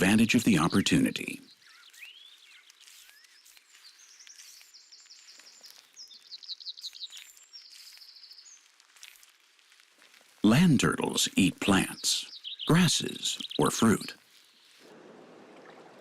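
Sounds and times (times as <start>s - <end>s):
bird trills: 0.0s - 9.2s, 11.9s - 14.8s
thin bird chirps: 0.0s - 14.9s.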